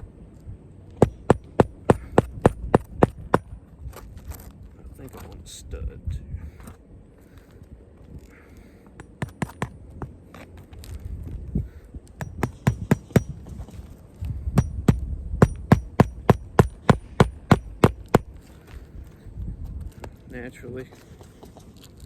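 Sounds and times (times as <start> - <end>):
hammer striking nail: 1.0 - 3.5, 9.0 - 9.8, 12.2 - 13.5, 14.6 - 18.3.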